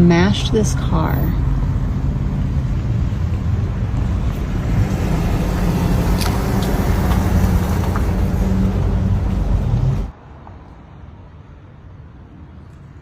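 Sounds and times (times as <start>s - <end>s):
low engine hum: 0.9s - 10.1s.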